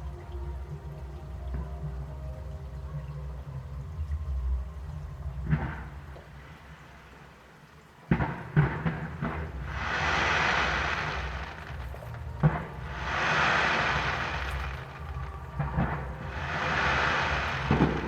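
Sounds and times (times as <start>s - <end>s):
fireworks bangs: 8.1s - 18.0s
fireworks hissing: 8.8s - 18.0s.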